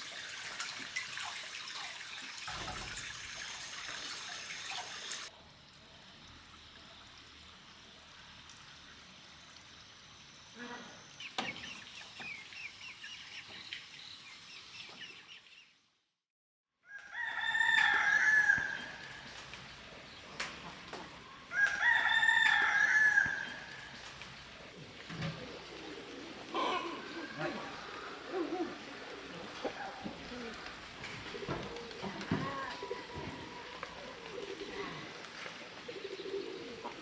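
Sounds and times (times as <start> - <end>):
rooster crowing: 16.8 - 19.0, 21.5 - 23.8.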